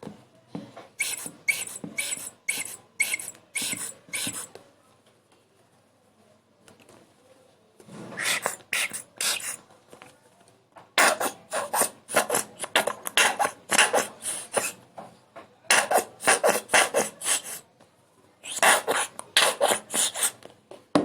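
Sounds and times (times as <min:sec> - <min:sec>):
rasping scratching strokes: 0:01.0 - 0:04.5, 0:18.5 - 0:20.4.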